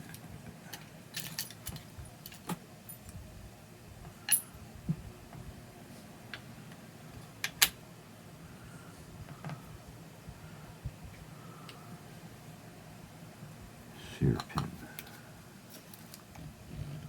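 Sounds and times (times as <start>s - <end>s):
metal parts and tools clinking: 0.7s - 3.1s, 4.3s - 4.5s.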